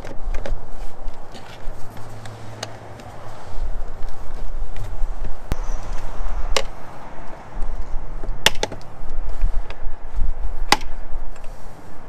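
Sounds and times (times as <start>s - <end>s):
wind buffeting microphone: 0.0s - 12.0s
sharp clicks or knocks: 8.2s - 8.9s.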